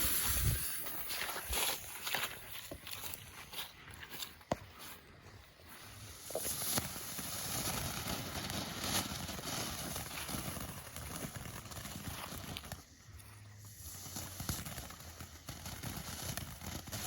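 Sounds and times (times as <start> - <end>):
firework fountain spraying: 0.0 - 1.5, 5.8 - 17.0.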